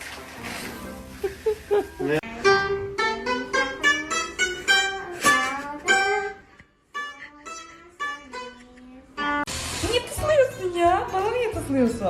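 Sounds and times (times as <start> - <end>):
plucked string melody: 2.1 - 9.5.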